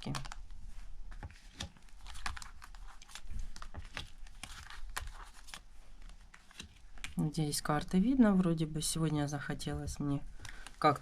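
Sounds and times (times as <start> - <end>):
cards clicking and slapping: 1.1 - 7.2.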